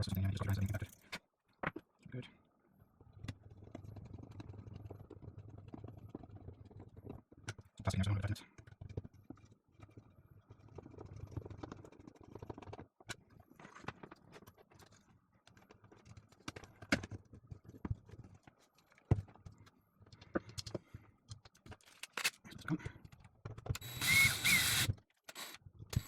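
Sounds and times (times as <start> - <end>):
grinder parts clicking and tapping: 21.6 - 22.4, 23.4 - 26.0.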